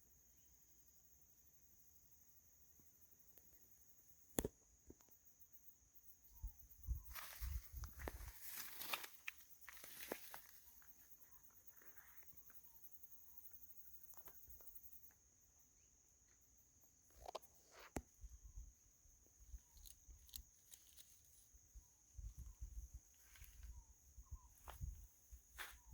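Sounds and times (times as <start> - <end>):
footsteps through vegetation: 7.0 - 11.0, 24.5 - 25.9.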